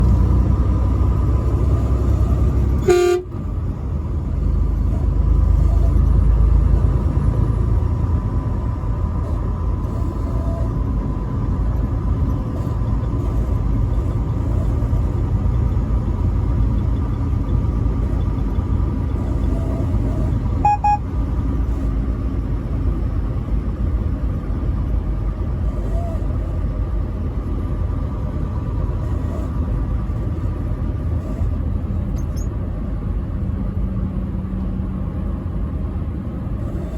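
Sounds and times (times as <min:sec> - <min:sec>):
truck engine and road rumble: 0:00.0 - 0:36.9
truck horn blast: 0:02.2 - 0:03.5, 0:20.6 - 0:21.1.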